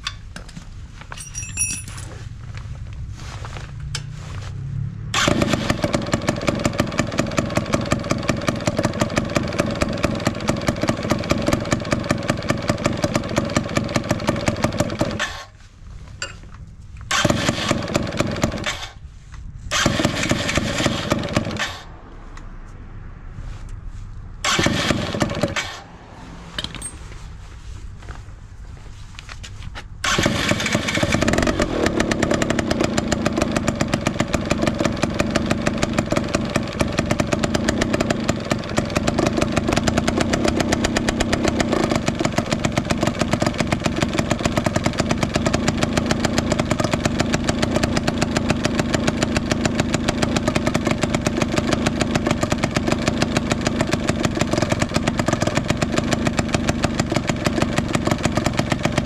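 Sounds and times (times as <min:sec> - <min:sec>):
scooter engine idling: 0:05.2 - 0:15.2, 0:30.0 - 0:59.0.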